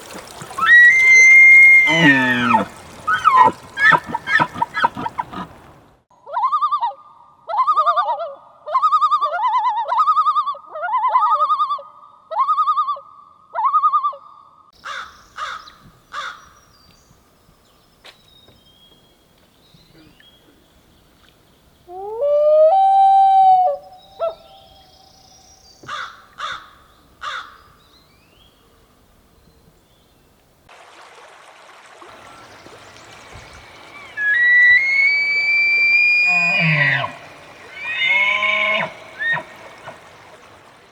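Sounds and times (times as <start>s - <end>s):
loon yodel: 0.6s - 5.5s, 21.9s - 24.8s, 34.0s - 40.0s
elk grunts: 1.9s - 5.6s
elk bugle: 33.8s - 40.6s.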